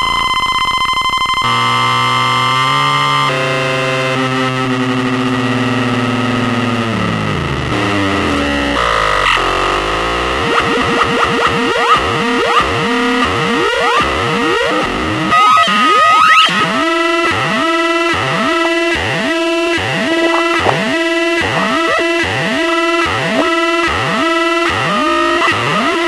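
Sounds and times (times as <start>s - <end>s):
rhythmic pulsing synth swoops: 18.5s - 22.8s
synthesizer electronic noise effects: 20.0s - 22.3s.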